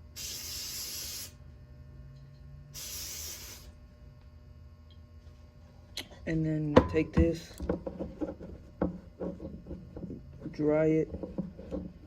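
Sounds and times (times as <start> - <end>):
aerosol can spraying: 0.2 - 1.4, 2.8 - 3.7.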